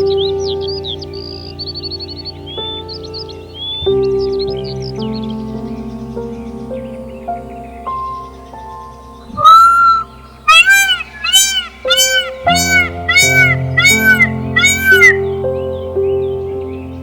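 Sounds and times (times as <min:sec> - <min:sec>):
background music with held notes: 0:00.0 - 0:17.0
animal calling: 0:09.3 - 0:15.3.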